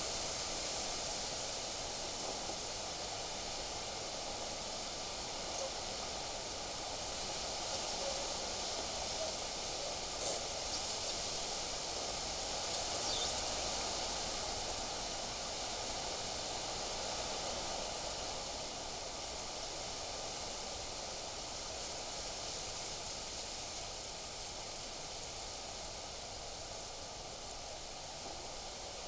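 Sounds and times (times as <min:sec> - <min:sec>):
wind blowing through trees: 0:07.1 - 0:14.6.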